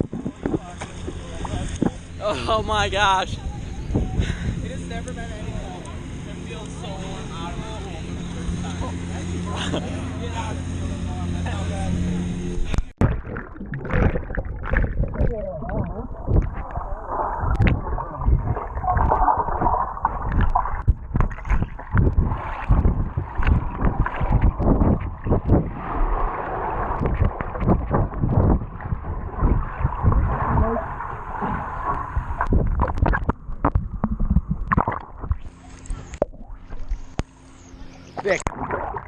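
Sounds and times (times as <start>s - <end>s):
pool water splashing and gurgling: 13.0s - 37.5s, 38.2s - 39.0s.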